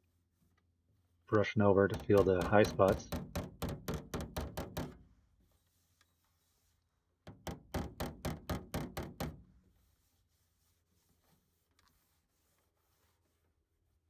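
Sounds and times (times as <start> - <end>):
hammer tapping sheet metal: 1.6 - 5.0, 7.4 - 9.4.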